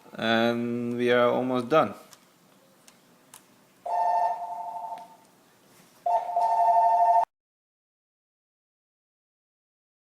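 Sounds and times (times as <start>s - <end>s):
phone ringing electronically: 3.9s - 5.2s, 6.1s - 7.3s.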